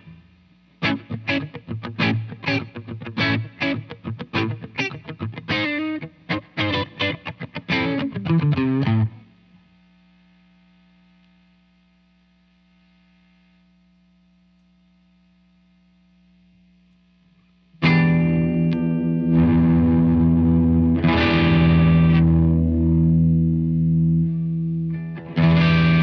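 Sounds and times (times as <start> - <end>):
electric guitar picked notes: 0.8 - 9.3, 17.8 - 26.0
overdriven guitar chord: 0.8 - 9.3, 17.8 - 26.0.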